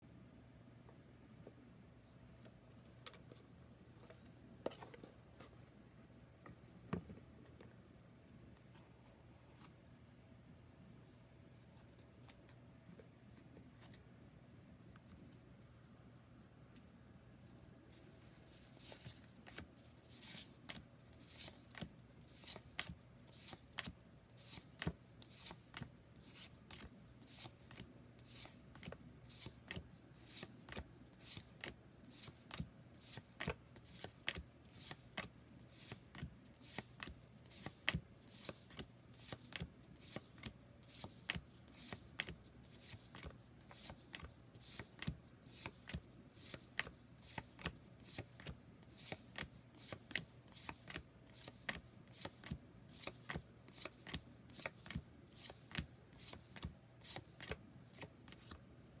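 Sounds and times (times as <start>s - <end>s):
cards flipping with crisp snaps: 28.4s - 56.7s.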